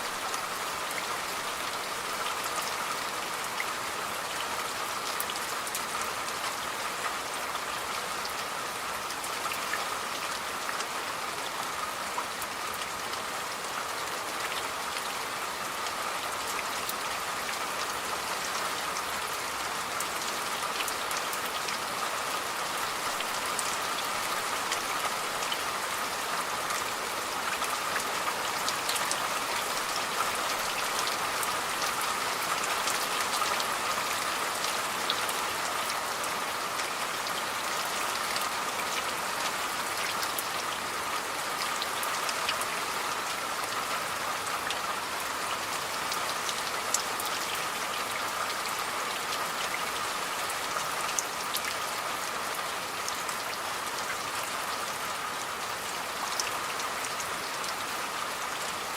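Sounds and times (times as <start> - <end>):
rain drops ticking on hard surface: 0.0 - 58.9.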